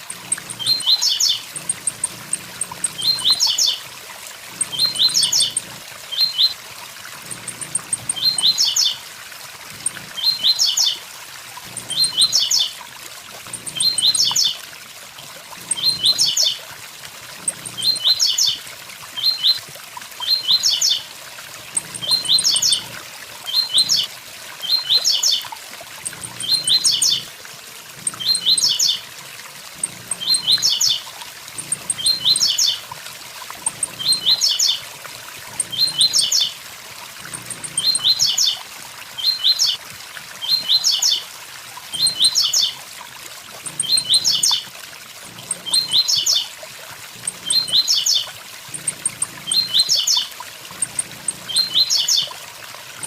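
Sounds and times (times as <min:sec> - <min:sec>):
bird singing high quick notes: 0:11.8 - 0:12.7.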